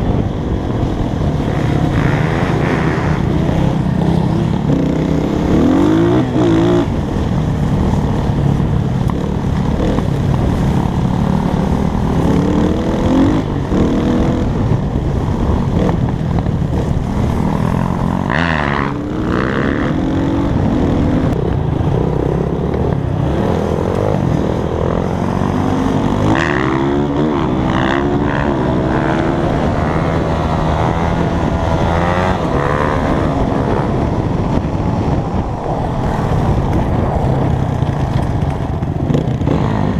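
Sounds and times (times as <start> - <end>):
dirt bike engine revving: 1.1 - 7.0, 16.7 - 21.4, 22.0 - 34.1.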